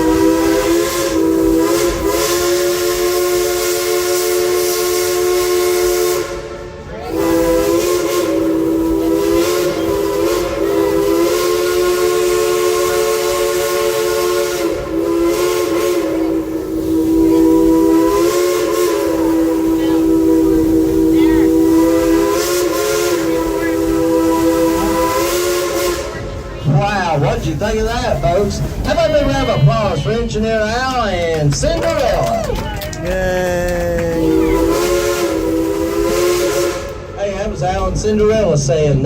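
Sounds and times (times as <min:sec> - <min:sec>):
steam locomotive chime whistle: 0:00.0 - 0:26.5, 0:34.1 - 0:37.3
steam hissing: 0:00.0 - 0:30.7, 0:33.3 - 0:38.2.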